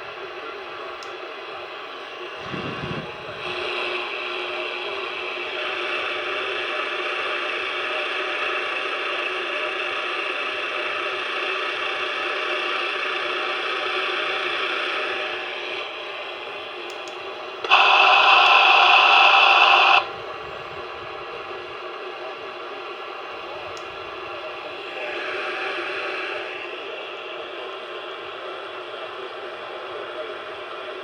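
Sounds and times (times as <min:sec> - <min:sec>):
radio static hiss: 0:00.0 - 0:31.0
harsh electronic burst: 0:17.7 - 0:20.1.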